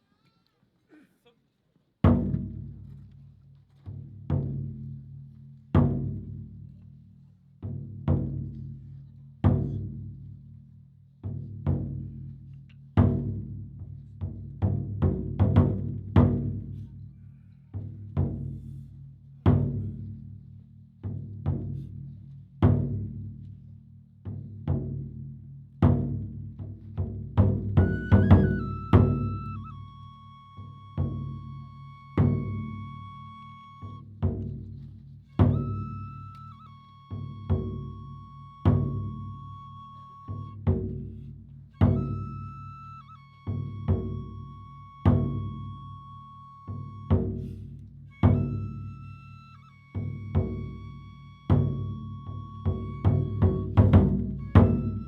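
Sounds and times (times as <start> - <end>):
deep drum strikes: 25.9 - 29.7.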